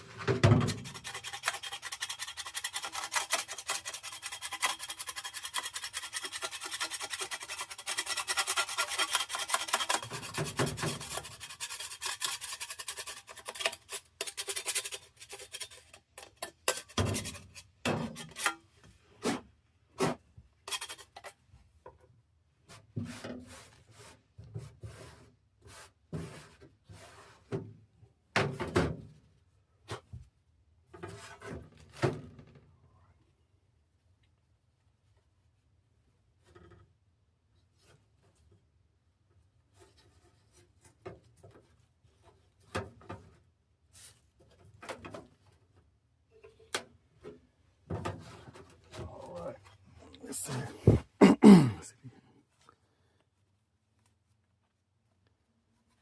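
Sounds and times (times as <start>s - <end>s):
hand scraping on metal parts: 0.6s - 19.4s, 20.6s - 21.5s.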